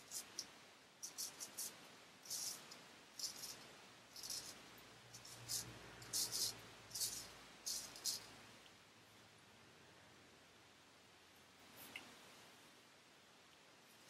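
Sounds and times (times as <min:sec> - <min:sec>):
razor scraping stubble: 0:01.0 - 0:08.3.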